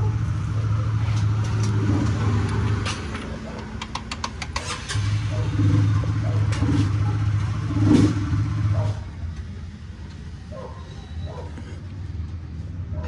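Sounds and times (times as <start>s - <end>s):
sharp metallic clicks: 2.4s - 5.0s.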